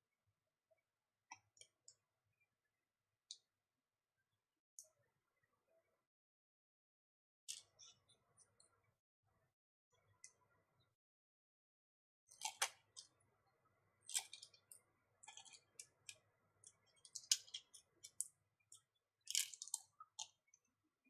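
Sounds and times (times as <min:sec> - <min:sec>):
small tool clicks and scrapes: 0:14.1 - 0:18.3.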